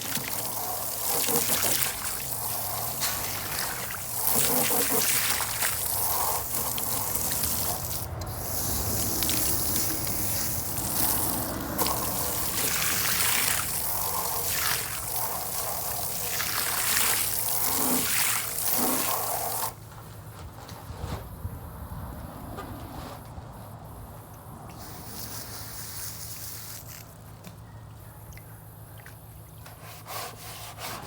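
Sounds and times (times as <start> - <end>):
water splashing in a bucket: 0.0 - 19.8.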